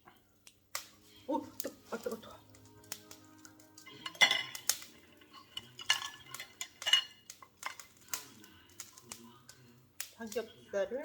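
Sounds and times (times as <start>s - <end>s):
metal utensils clanking on grill: 1.9s - 9.8s.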